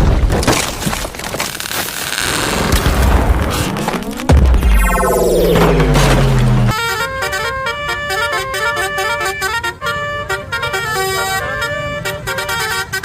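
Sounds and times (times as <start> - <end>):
deep low tone: 2.8 - 6.8
musical bus horn tune: 6.8 - 13.0.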